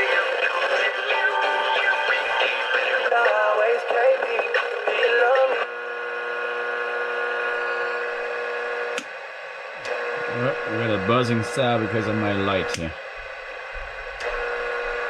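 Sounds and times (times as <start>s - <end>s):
electrical interference buzz: 0.8s - 15.0s
voice from radio speaker: 10.0s - 13.0s.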